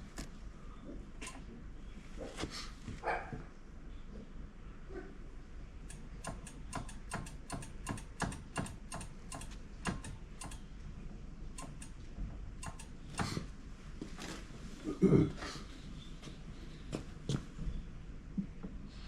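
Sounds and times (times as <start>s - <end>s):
light mechanical clicks: 5.9s - 10.7s, 11.6s - 13.4s.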